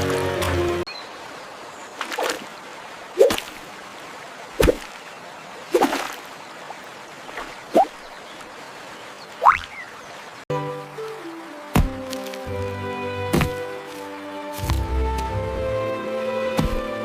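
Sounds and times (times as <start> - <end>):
water drops plinking: 9.4 - 9.9.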